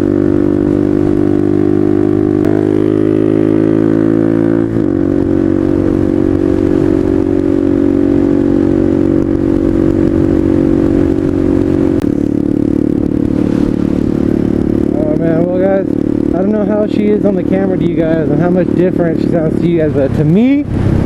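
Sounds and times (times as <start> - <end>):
motorcycle engine running: 0.0 - 21.0.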